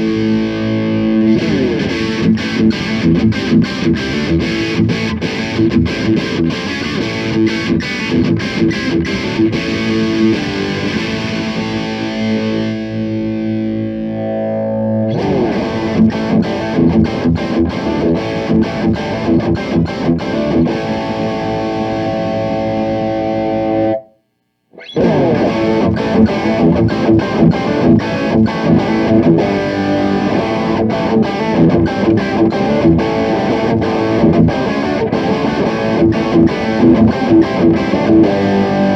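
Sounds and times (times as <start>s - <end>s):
distorted electric guitar riffs: 0.0s - 38.9s.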